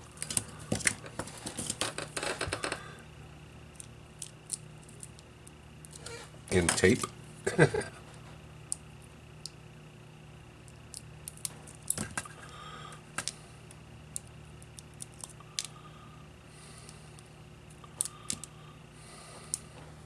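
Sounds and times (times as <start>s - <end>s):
small screws clicking and tapping: 13.2s - 15.7s, 17.7s - 18.5s.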